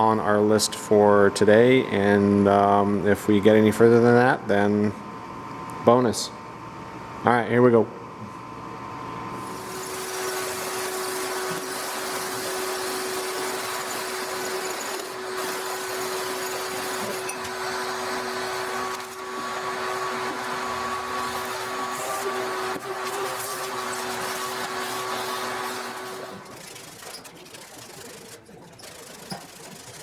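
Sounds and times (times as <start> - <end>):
electric motor whirring: 9.4 - 30.0.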